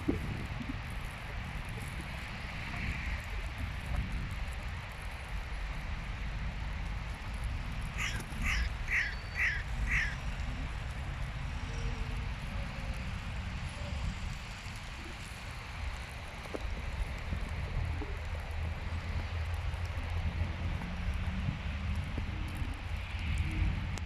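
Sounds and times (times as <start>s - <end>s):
low rumble of wind: 0.0s - 24.0s
crow cawing: 8.0s - 10.3s.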